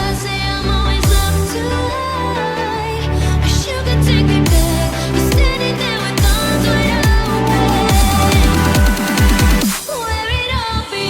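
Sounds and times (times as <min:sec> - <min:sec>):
electronic dance music: 0:05.4 - 0:10.2
falling bass sweeps: 0:06.6 - 0:09.8
gliding synth tones: 0:06.7 - 0:09.8.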